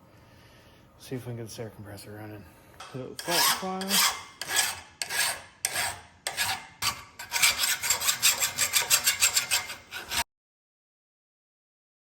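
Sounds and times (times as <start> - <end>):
rasping strokes on hard surface: 3.2 - 10.3.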